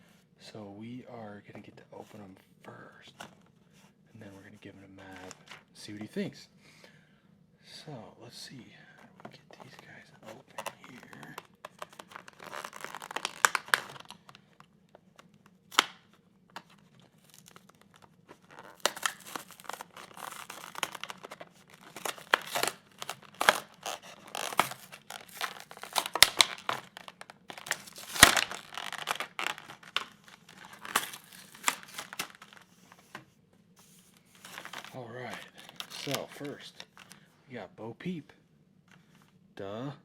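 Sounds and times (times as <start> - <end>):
packaging tearing and crinkling: 10.3 - 14.6, 15.7 - 16.0, 16.6 - 32.8, 34.3 - 37.2.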